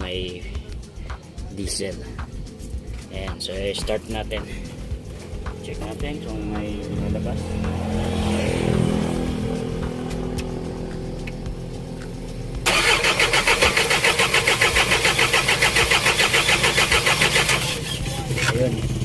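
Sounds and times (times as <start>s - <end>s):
diesel engine cranking: 9.5s - 19.0s.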